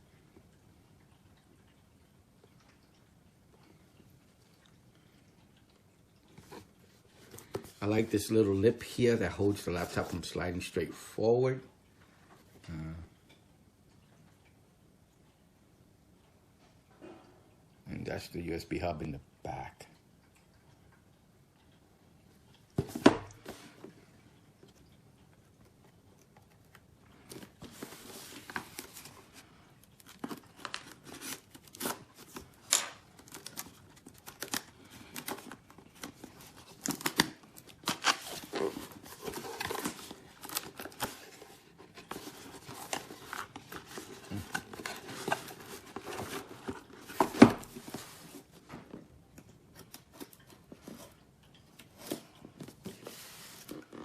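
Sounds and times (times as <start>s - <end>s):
cardboard rustling and tearing: 27.3s - 48.5s.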